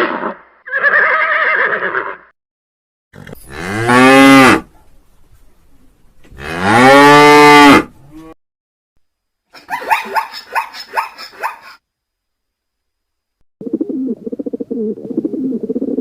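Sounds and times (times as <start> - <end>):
cow mooing: 6.4 - 8.4.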